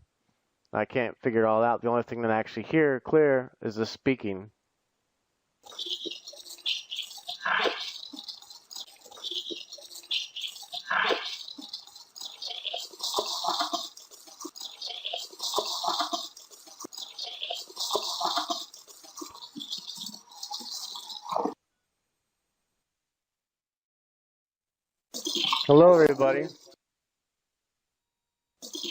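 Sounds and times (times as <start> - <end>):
garbled filtered voice: 5.6 - 21.6, 25.2 - 26.8, 28.6 - 28.9.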